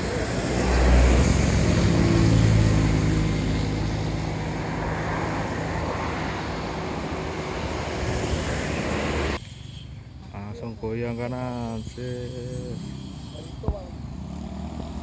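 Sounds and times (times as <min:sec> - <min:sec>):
bus diesel engine passing: 0:00.0 - 0:10.3.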